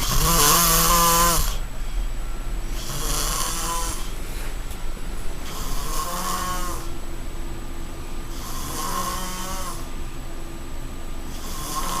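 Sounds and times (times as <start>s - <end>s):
man snoring: 0.0s - 1.7s, 2.7s - 4.2s, 5.4s - 7.0s, 8.3s - 9.9s, 11.3s - 12.0s.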